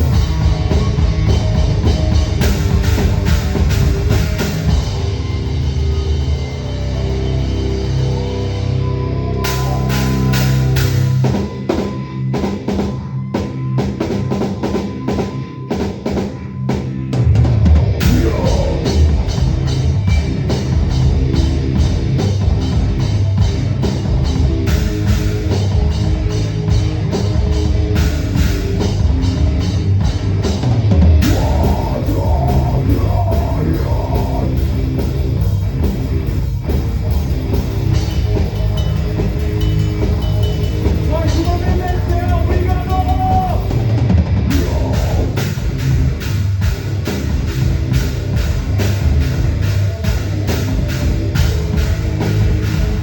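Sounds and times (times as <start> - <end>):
heavy metal band playing live: 0.0 - 53.0
drum hits: 18.0 - 21.9, 30.2 - 53.0.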